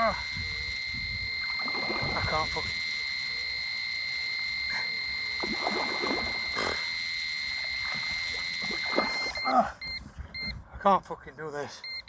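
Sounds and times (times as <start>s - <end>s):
high-pitched bite alarm tone: 0.0s - 10.5s.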